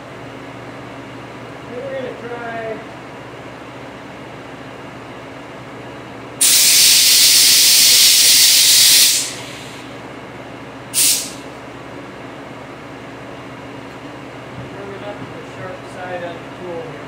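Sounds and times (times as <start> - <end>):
low machine hum: 0.0 - 6.6, 9.2 - 17.0
compressed air hissing from blow gun: 6.4 - 9.8, 11.0 - 11.4.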